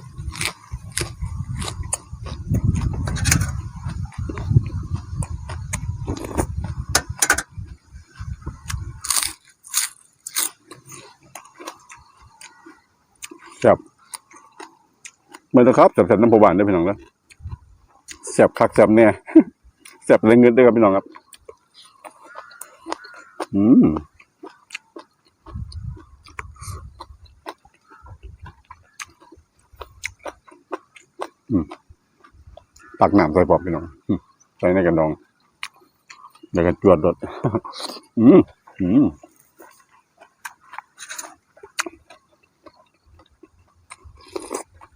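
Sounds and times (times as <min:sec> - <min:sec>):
wind buffeting microphone: 0:00.0 - 0:09.4, 0:17.4 - 0:17.9, 0:25.4 - 0:29.0
crunching and chewing crisp food: 0:00.0 - 0:44.9.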